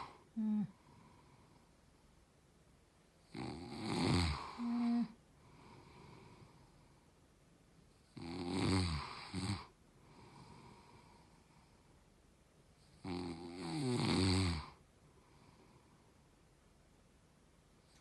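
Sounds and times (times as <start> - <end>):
quiet breathing: 0.0 - 2.4, 3.1 - 8.2, 8.9 - 13.6, 14.6 - 16.6
man snoring: 3.3 - 5.2, 8.2 - 11.0, 13.0 - 14.8.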